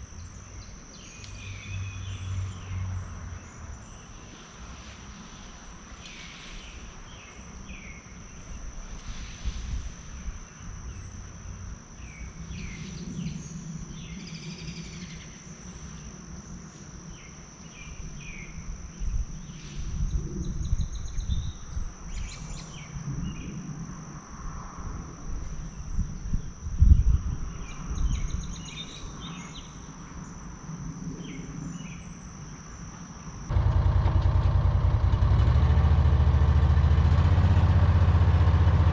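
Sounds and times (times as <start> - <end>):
insects droning: 0.0 - 38.9
motor starting: 33.5 - 38.9.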